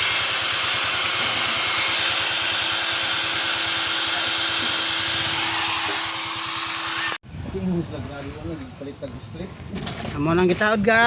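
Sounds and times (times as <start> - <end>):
machine hiss and hum: 0.0 - 7.2.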